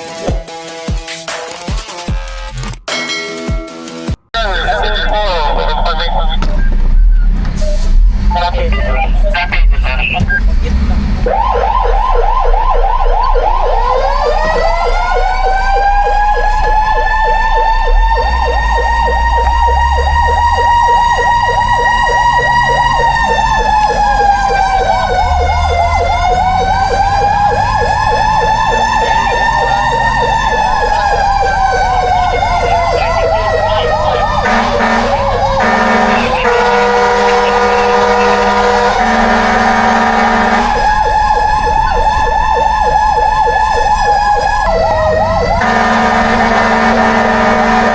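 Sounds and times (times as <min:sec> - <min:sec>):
fire truck engine rumble: 0:04.4 - 0:47.9
siren slow wail: 0:11.2 - 0:47.9
siren fast warbling yelp: 0:11.3 - 0:47.9.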